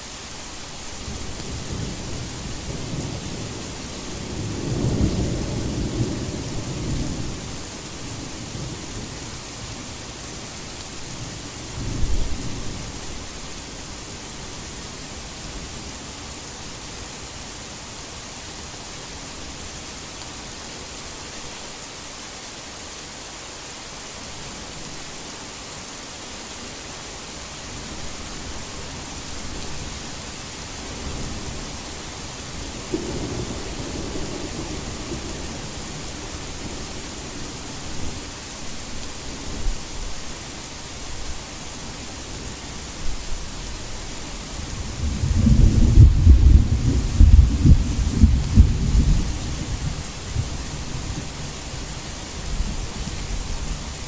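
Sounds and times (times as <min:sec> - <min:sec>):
heavy rain: 0:00.0 - 0:54.0
thunder rumbling: 0:30.8 - 0:38.2, 0:44.6 - 0:51.6
thunder clap: 0:45.0 - 0:50.5.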